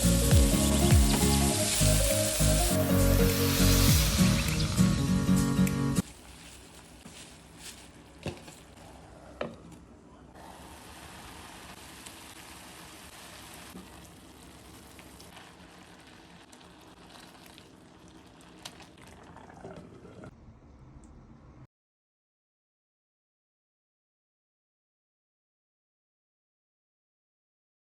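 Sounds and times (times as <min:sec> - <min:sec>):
food sizzling in a pan: 0:00.0 - 0:05.4, 0:10.4 - 0:17.9.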